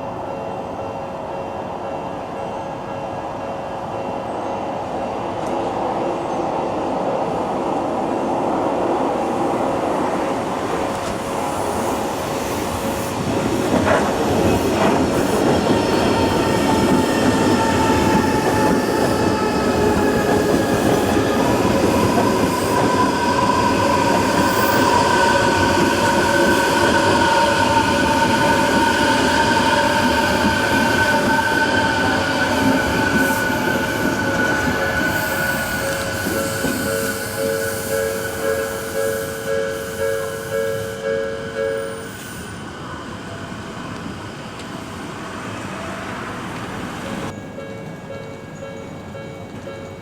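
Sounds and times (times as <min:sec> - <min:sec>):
electric train running past: 0:00.0 - 0:50.0
high steady squeal: 0:15.4 - 0:41.0.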